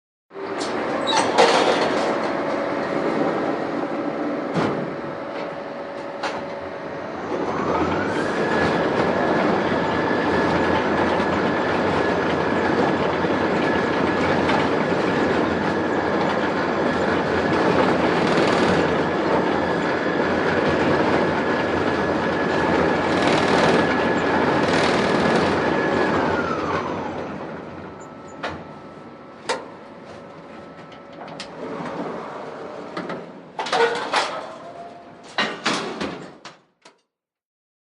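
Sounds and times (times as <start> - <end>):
lift motor whine: 1.9 - 33.0
lift rattling: 10.5 - 26.4.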